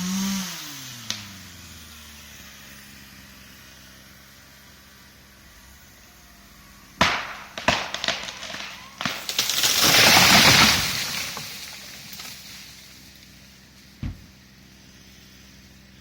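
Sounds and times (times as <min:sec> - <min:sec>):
falling tree crashing: 0:07.0 - 0:13.3
tree trunk cracking: 0:07.0 - 0:13.3.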